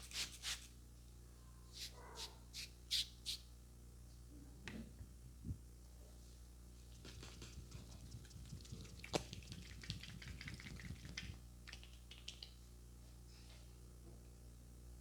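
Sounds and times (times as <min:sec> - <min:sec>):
hands tapping on head: 0:07.0 - 0:11.2.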